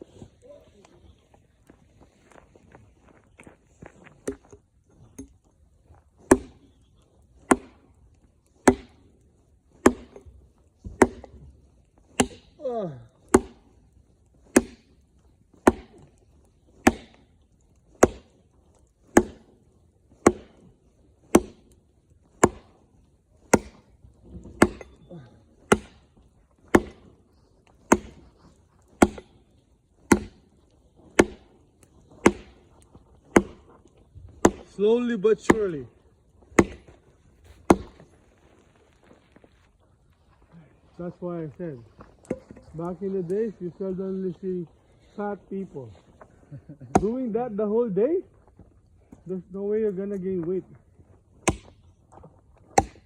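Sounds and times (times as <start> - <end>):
axe chopping wood: 4.2 - 4.5, 6.2 - 6.8, 7.4 - 13.8, 14.4 - 15.0, 15.6 - 29.4, 30.0 - 35.8, 36.4 - 38.2, 42.2 - 42.7, 46.9 - 47.3, 51.4 - 51.8, 52.6 - 53.0.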